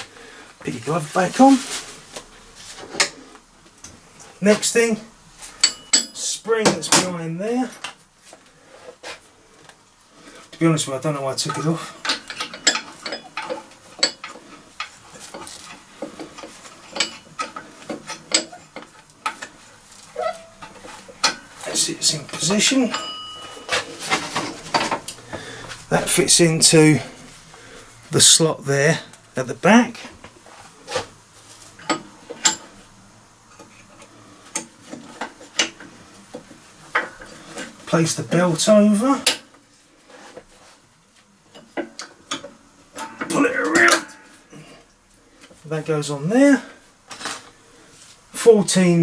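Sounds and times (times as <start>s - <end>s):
metal parts clinking: 11.4s - 14.4s, 15.2s - 19.5s.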